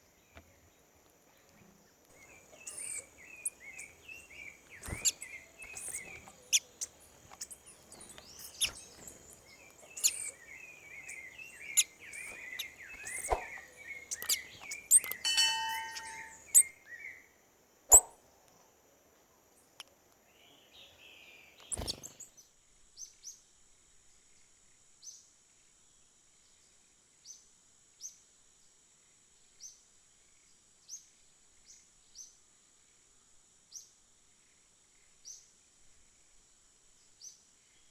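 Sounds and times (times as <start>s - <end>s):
small birds twittering: 0.1s - 17.3s, 19.6s - 22.4s
thin high bird call notes: 2.2s - 16.7s.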